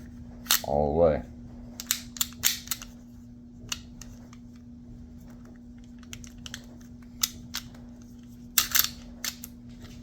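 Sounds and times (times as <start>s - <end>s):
steady low hum: 0.0s - 10.0s
pistol parts clicking: 1.8s - 2.9s, 5.8s - 7.8s, 8.5s - 9.6s.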